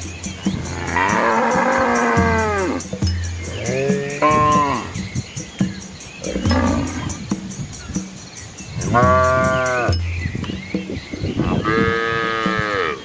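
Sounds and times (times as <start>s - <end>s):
deep low moo: 0.6s - 2.8s, 3.5s - 5.0s, 6.2s - 7.2s, 8.8s - 9.9s, 11.4s - 13.0s
cattle mooing: 0.7s - 2.8s, 3.5s - 5.0s, 6.2s - 7.2s, 8.9s - 9.9s, 11.6s - 13.0s.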